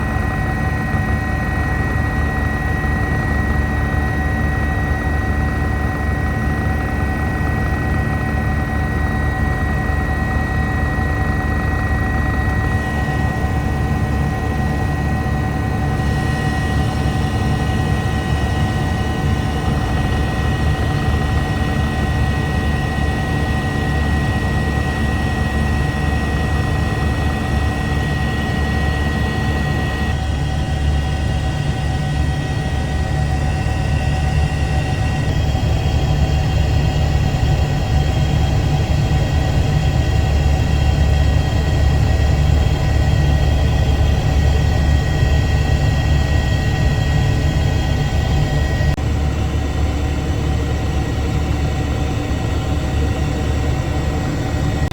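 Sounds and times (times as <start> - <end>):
helicopter rotor and engine: 0.0 - 54.9
high-pitched turbine whine: 0.0 - 54.9.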